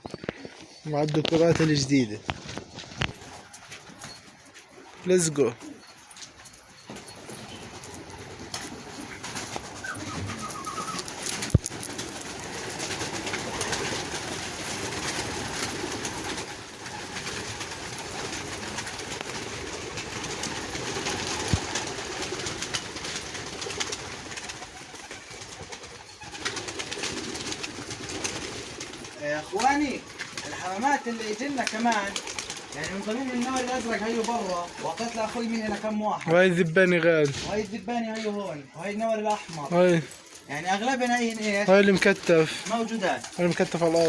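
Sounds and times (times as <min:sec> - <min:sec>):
pigeons cooing: 0:02.5 - 0:35.7.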